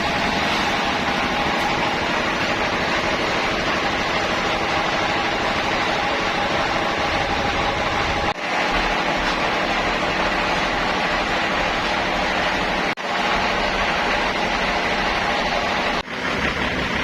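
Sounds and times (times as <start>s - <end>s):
sawmill machinery running: 0.0s - 17.0s.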